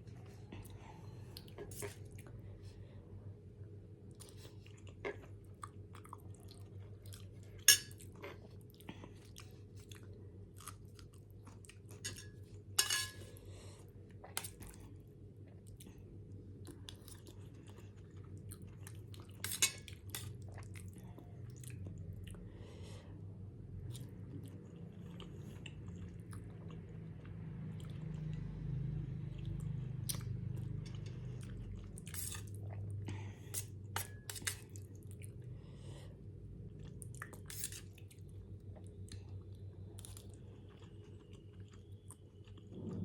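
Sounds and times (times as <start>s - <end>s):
low steady hum: 0.0s - 43.0s
person chewing noodles: 4.0s - 12.7s, 13.3s - 22.4s, 23.8s - 28.8s, 29.4s - 35.8s, 36.6s - 43.0s.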